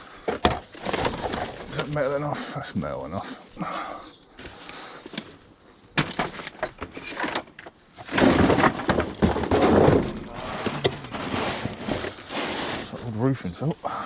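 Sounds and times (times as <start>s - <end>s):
scrap metal clanking: 6.0s - 13.2s
scrap metal crashing clatter: 8.0s - 13.0s.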